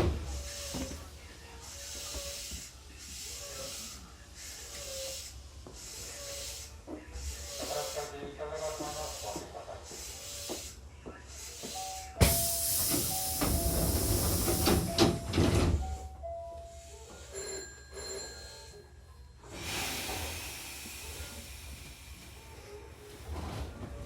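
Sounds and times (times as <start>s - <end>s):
air hiss of doors: 11.4s - 16.0s, 19.5s - 22.6s
train door knock: 12.2s - 16.0s.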